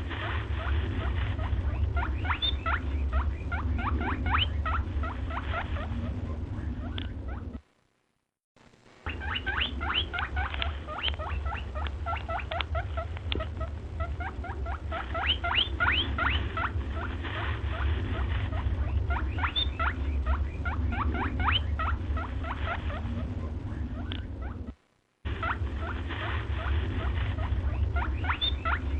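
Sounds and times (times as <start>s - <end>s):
small animals squeaking: 0.0s - 7.6s, 9.1s - 28.9s
steady low hum: 0.0s - 28.9s.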